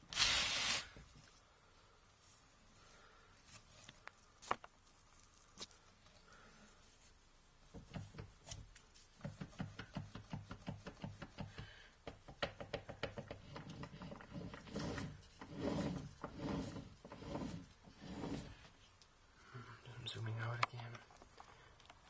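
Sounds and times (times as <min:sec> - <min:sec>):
rubbing scrapes: 0:13.2 - 0:18.6.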